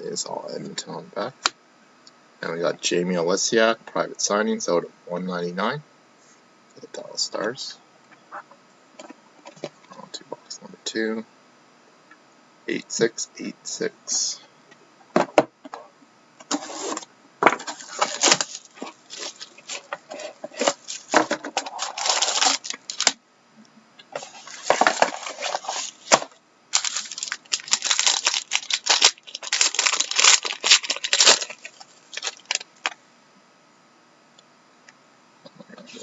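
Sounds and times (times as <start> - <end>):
plastic wrapping tearing and crinkling: 16.5 - 23.2, 24.1 - 32.9.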